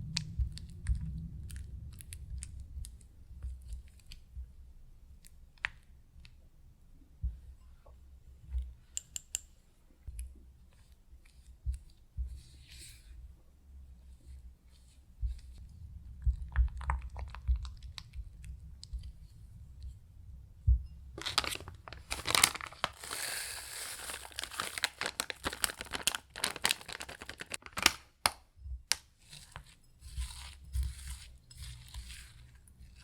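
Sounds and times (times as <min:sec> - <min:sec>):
plastic crinkling and tearing: 0:16.6 - 0:18.1, 0:21.2 - 0:28.4.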